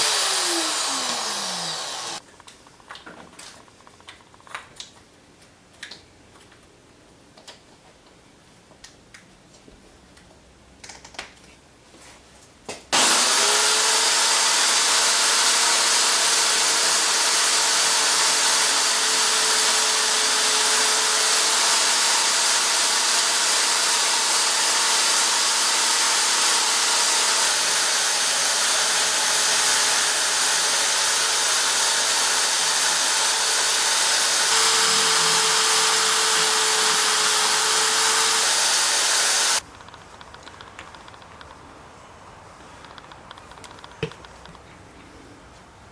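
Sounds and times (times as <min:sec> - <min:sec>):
power tool whining: 0:00.0 - 0:02.2, 0:13.0 - 0:39.6.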